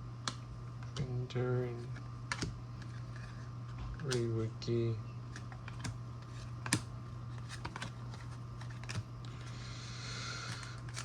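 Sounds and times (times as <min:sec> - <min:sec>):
steady low hum: 0:00.0 - 0:11.0
cards flipped by hand: 0:05.3 - 0:09.5, 0:10.4 - 0:11.0.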